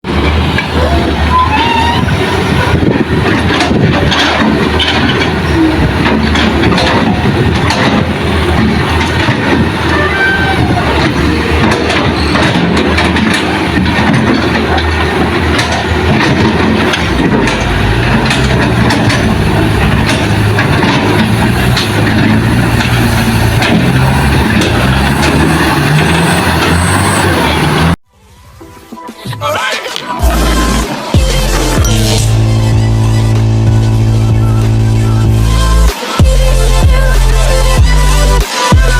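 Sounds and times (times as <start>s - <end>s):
excavator diesel engine running: 0.0s - 28.0s, 29.4s - 38.9s
short high squeals: 0.8s - 2.4s
metallic knocks and scraping: 2.6s - 28.0s.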